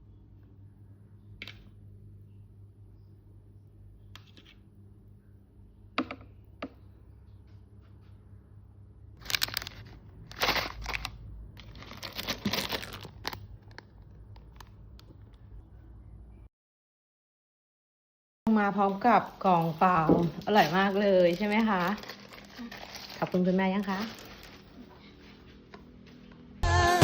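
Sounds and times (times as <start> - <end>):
low steady hum: 0.0 - 16.5
crinkling and rustling: 9.2 - 15.5, 18.8 - 26.4.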